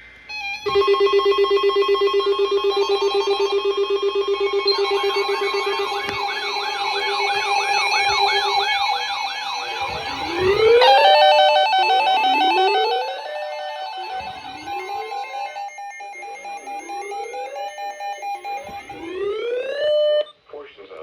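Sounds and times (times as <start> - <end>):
pulsing electronic alert tones: 0.3 - 20.3
siren-like wail: 0.3 - 20.3
rising electronic sweep: 3.8 - 20.2.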